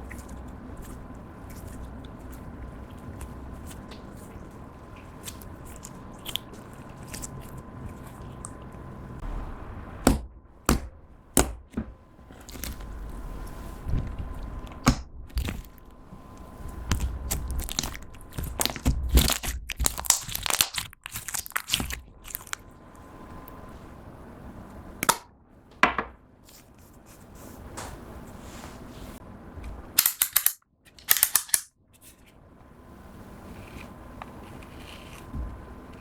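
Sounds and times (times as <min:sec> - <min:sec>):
slime squishing with wet pops: 0:00.0 - 0:08.9, 0:14.0 - 0:22.6
slime crackling: 0:00.0 - 0:22.7.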